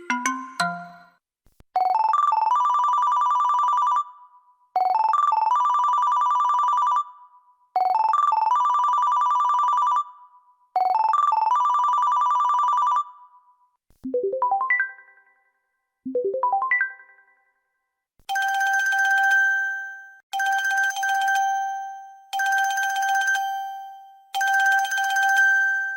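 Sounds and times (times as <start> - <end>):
mobile phone ringtones: 1.8 - 13.5, 18.3 - 25.9.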